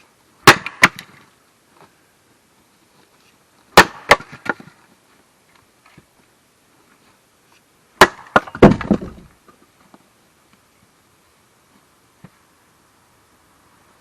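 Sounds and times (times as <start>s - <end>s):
axe striking firewood: 0.4s - 1.2s, 3.7s - 4.7s, 8.0s - 9.3s
wood cracking and clattering: 8.0s - 9.3s.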